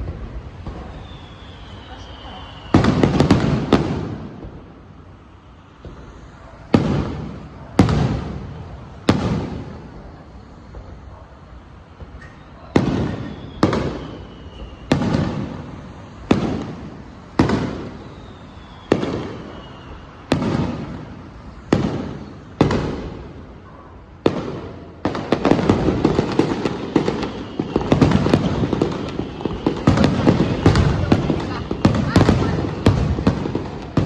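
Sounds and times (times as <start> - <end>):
fireworks bangs echoing: 0.0 - 34.0
fireworks crackle of small pops: 0.0 - 34.0.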